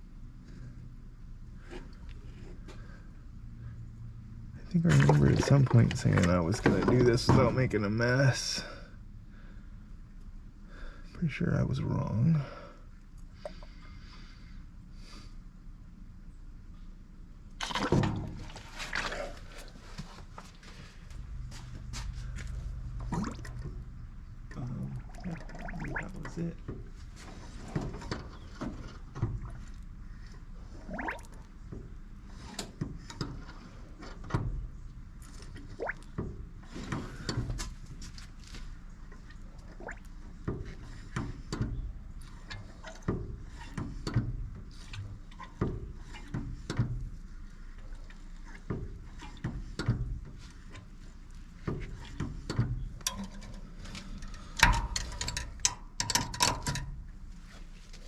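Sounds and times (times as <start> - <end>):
tools clicking and clunking: 40.4 - 47.2, 48.5 - 58.0.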